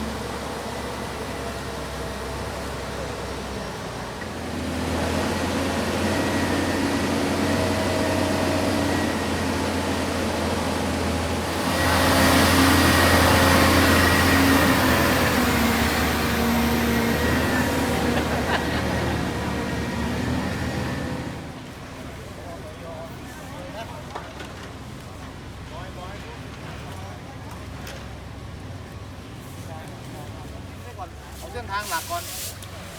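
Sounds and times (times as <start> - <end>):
vehicle engine running: 4.8 - 21.7.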